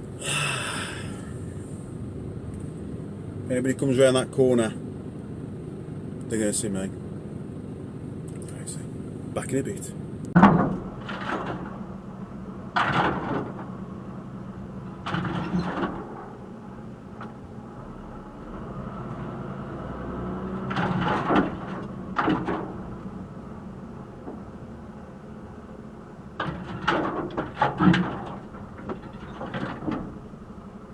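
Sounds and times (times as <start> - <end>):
knocks and scrapes: 10.4 - 11.8.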